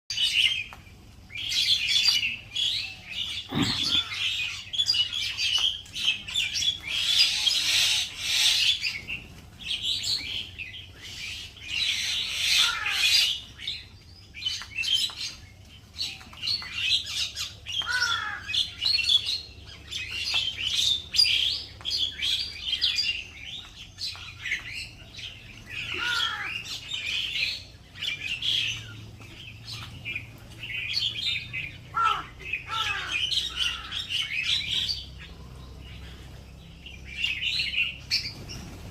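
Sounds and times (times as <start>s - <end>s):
birds chirping and twittering: 0.1s - 38.9s
short falling bird calls: 2.7s - 5.4s, 11.4s - 13.7s, 17.7s - 19.2s, 25.7s - 29.0s, 31.0s - 36.4s.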